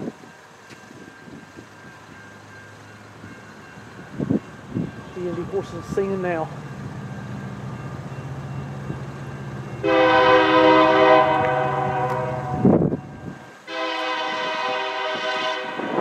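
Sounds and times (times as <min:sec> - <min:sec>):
low locomotive drone: 0:00.0 - 0:16.0
locomotive air horn blasts: 0:09.8 - 0:12.8, 0:13.7 - 0:16.0.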